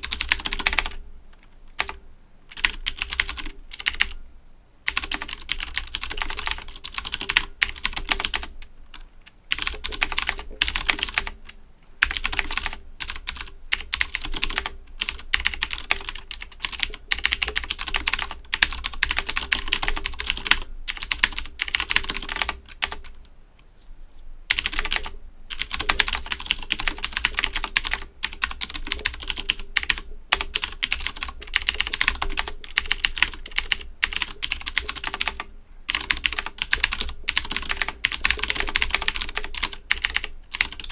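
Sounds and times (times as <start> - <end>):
mechanical keyboard clicks: 0.0 - 4.2, 4.9 - 11.4, 12.0 - 23.1, 24.5 - 40.9.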